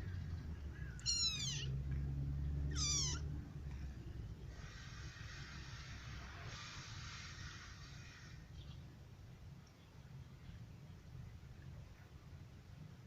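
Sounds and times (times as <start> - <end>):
low steady rumble: 0.0 - 13.0
kitten mewing: 1.0 - 1.8, 2.7 - 3.3.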